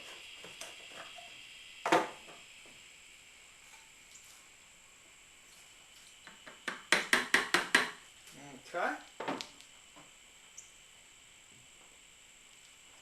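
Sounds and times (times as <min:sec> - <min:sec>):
sharp knock of hard object: 0:06.7 - 0:08.0.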